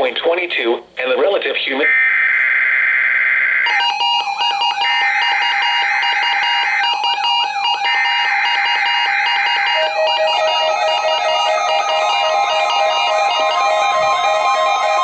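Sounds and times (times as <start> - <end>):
music: 3.7 - 15.0.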